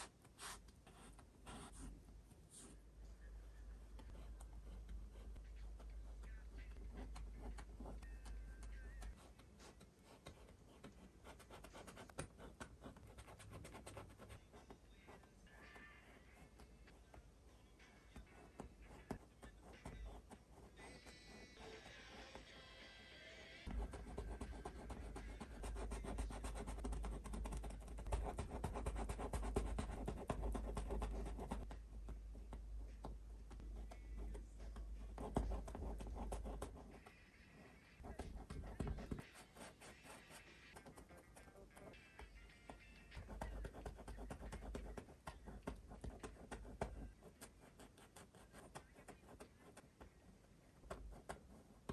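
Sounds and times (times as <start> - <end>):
brush scratching on canvas: 0.0 - 2.8, 34.8 - 41.9
paintbrush strokes and dabs: 0.0 - 2.9.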